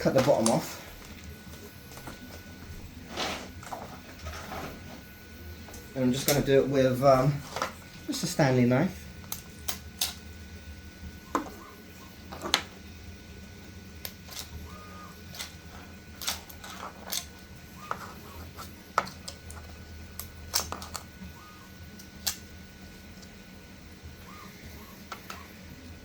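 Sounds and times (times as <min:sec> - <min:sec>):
plastic cracking and snapping: 0:16.2 - 0:17.4.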